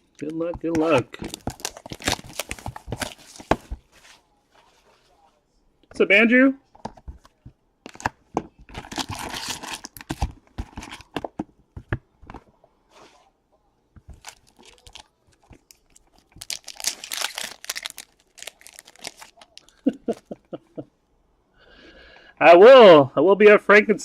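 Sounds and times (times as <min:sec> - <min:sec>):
plastic wrapping crinkling: 0:00.0 - 0:04.2, 0:07.9 - 0:11.3, 0:14.0 - 0:20.3.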